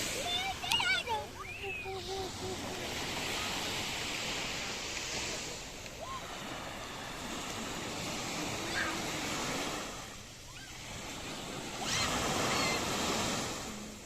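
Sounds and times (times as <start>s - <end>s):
sea waves breaking on beach: 0.0s - 14.0s.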